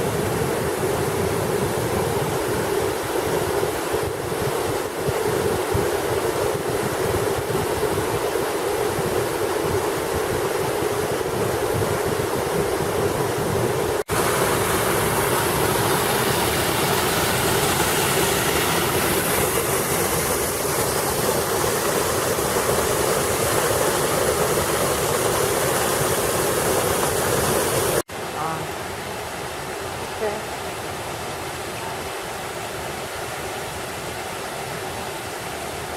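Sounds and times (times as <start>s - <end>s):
waterfall rushing: 8.0s - 35.9s.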